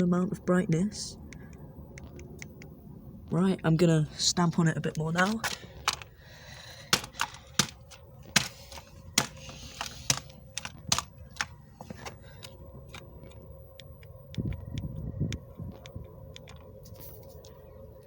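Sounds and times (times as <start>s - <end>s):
plastic remote cracking underfoot: 4.9s - 14.7s.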